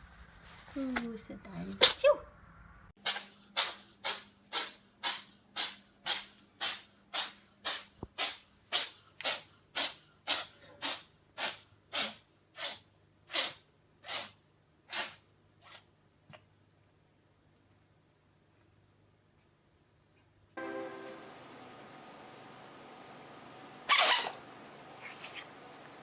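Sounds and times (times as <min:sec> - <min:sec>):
cat sneezing: 0:03.0 - 0:15.9, 0:23.9 - 0:24.4.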